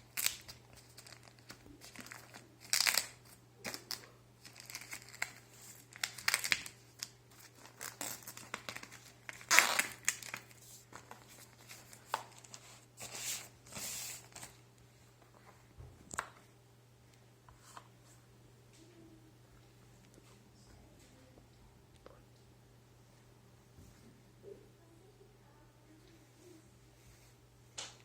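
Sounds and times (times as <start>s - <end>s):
packaging tearing and crinkling: 0.0s - 14.5s.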